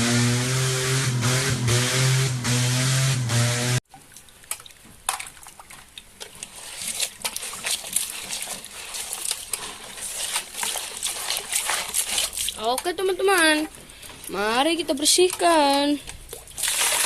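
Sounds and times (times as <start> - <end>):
loud car engine sound effect: 0.0 - 3.8.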